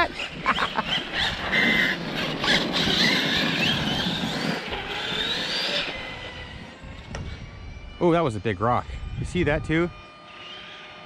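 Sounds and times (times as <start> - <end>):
tyre and drivetrain noise: 0.0 - 7.3
high electric motor whine: 0.0 - 11.0.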